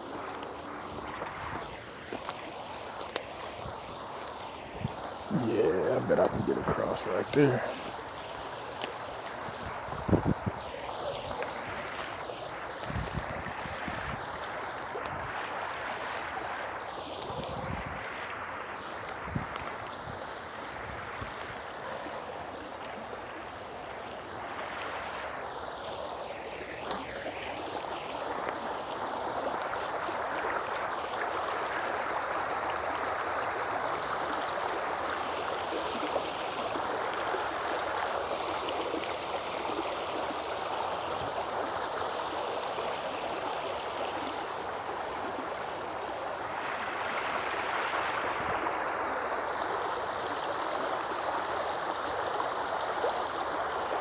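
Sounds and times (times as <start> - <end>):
creek water running: 0.0 - 54.0.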